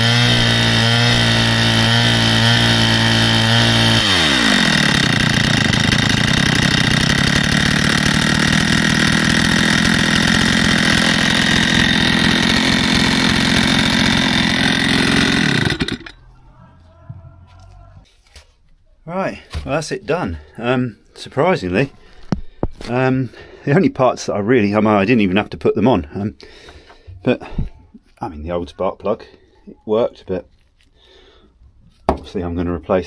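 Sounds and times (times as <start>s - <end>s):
brushcutter engine revving and idling: 0.0s - 16.2s.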